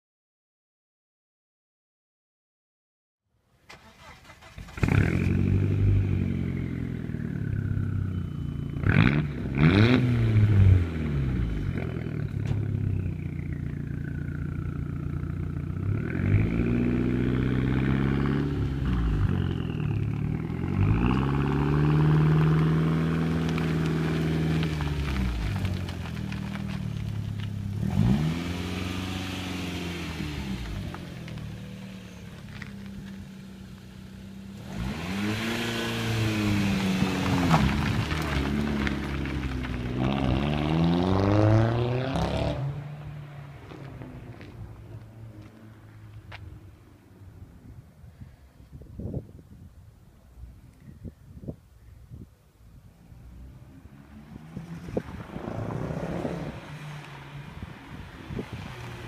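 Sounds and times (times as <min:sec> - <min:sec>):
exhaust cracks: 0:03.7 - 0:07.8, 0:08.8 - 0:46.5
car engine revving: 0:03.7 - 0:45.6, 0:53.4 - 0:59.0.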